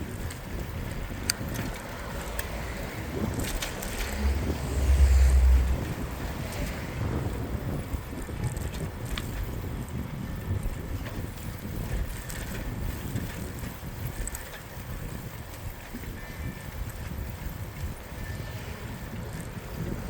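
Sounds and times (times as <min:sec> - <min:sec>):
road noise: 0:00.0 - 0:20.0
wind rumbling on microphone: 0:00.0 - 0:20.0
faint ticks and clicks: 0:10.4 - 0:16.1.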